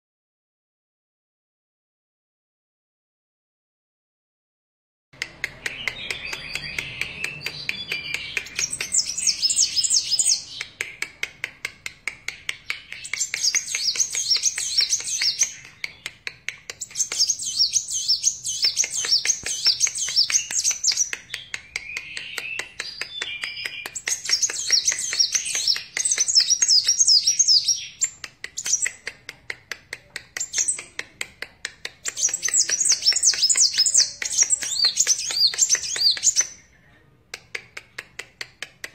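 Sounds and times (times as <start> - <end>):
bird twittering trills: 5.9 - 10.6, 16.8 - 21.1, 21.8 - 28.8.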